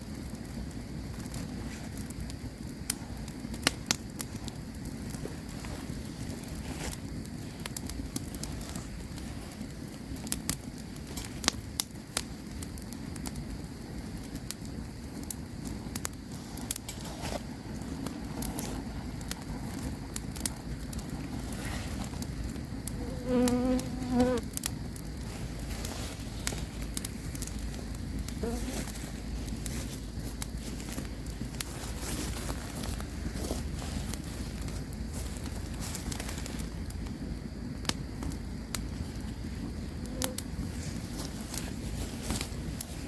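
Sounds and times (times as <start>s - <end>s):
campfire crackling and popping: 0.0s - 43.0s
steady low hiss: 0.0s - 43.0s
insect buzzing past: 22.9s - 24.5s, 28.4s - 28.8s.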